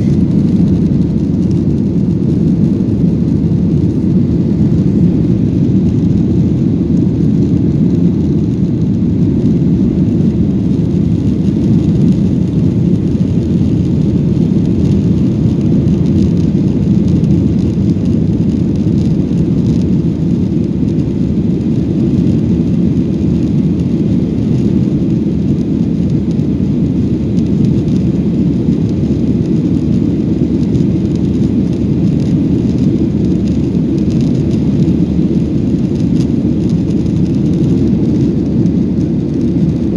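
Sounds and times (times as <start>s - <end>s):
rushing air: 0.0s - 16.1s
jet engines rumbling: 0.0s - 39.9s.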